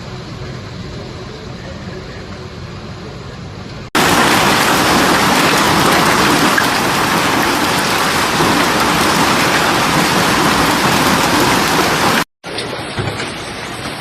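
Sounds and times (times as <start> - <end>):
heavy rain downpour: 4.0 - 14.0.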